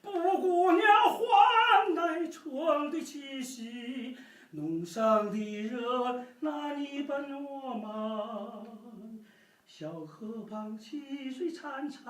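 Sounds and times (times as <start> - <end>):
breaths between notes: 4.2 - 4.5, 9.2 - 9.7.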